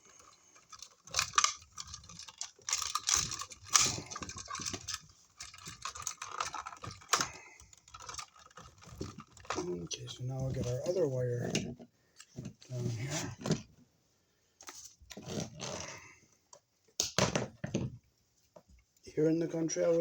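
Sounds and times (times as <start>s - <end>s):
wire and hand tools rattling: 0.0s - 12.9s.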